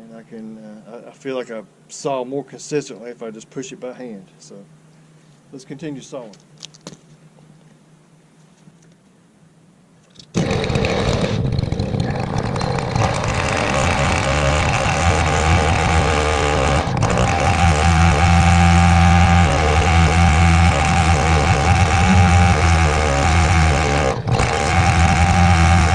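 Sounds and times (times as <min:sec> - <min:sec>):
chainsaw cutting log: 0:10.2 - 0:25.9.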